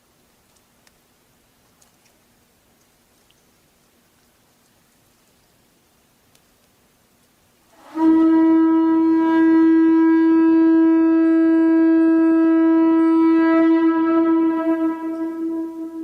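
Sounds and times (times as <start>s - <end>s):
conch shell trumpet note: 7.7s - 16.0s.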